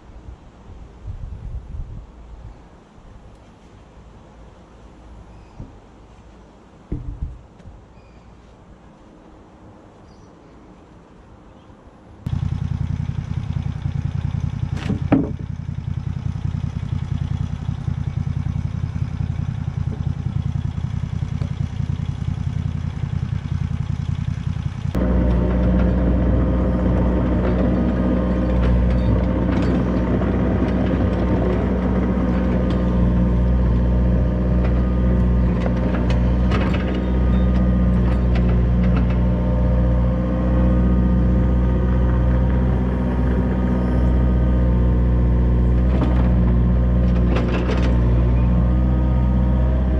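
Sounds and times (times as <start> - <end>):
deeper louder engine: 12.2 - 49.9
engine running: 12.2 - 49.9.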